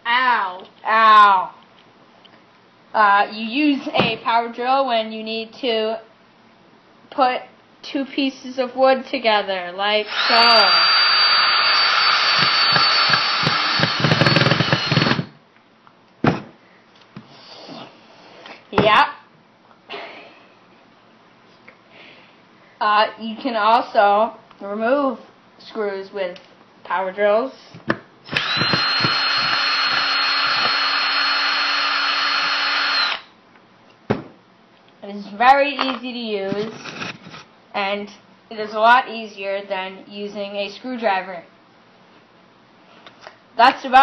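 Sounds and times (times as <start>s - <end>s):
drill motor whine: 10.1s - 15.3s, 28.3s - 33.3s.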